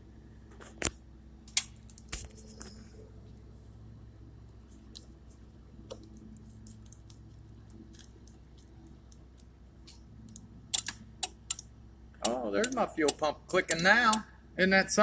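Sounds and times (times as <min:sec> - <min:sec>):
low steady hum: 0:00.0 - 0:15.0
clicks and taps of electrical connector: 0:10.3 - 0:14.2.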